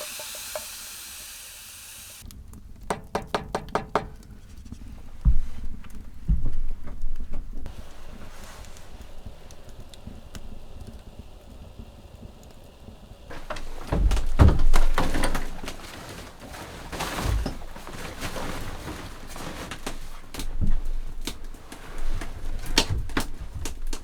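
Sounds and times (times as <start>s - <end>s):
heavy thuds of objects set down: 13.3s - 19.9s.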